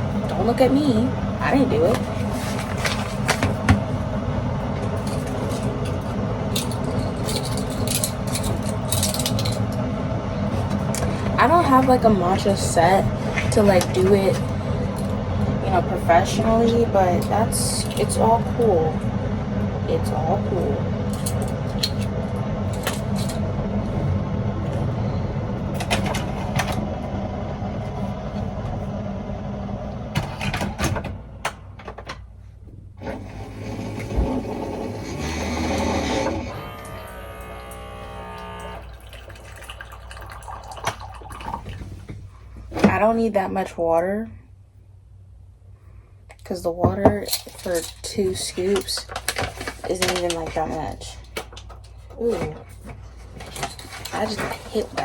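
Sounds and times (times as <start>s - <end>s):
water heater humming: 0.0s - 55.0s
utensils clattering: 4.9s - 9.8s, 21.1s - 22.1s, 22.7s - 23.4s, 46.9s - 51.0s
kettle heating water: 33.0s - 42.2s.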